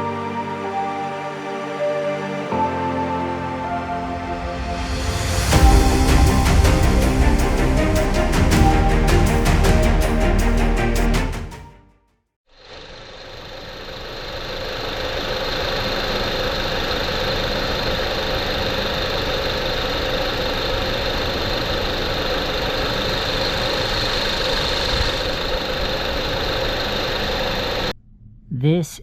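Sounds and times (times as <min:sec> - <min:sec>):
high whine: 0:04.0 - 0:11.5.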